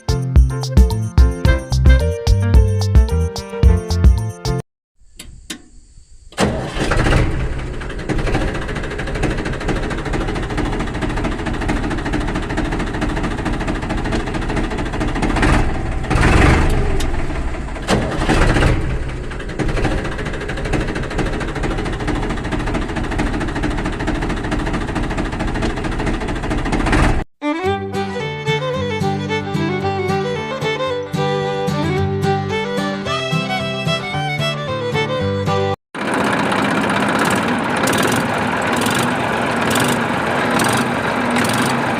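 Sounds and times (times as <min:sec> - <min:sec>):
small engine running: 0:06.4 - 0:27.2, 0:36.0 - 0:41.9.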